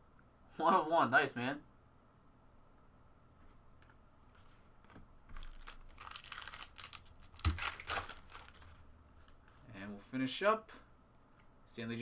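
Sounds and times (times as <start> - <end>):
card pack wrapper crinkling: 5.4 - 8.8.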